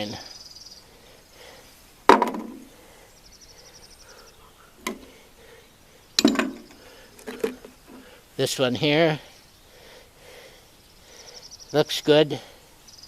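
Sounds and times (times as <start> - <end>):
metal parts clacking: 6.2 - 7.7.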